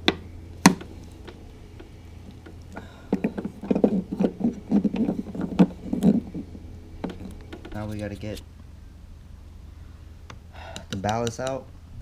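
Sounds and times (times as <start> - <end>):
small taps and rattles: 0.0 - 8.0, 10.3 - 11.7
steady low hum: 0.0 - 12.0.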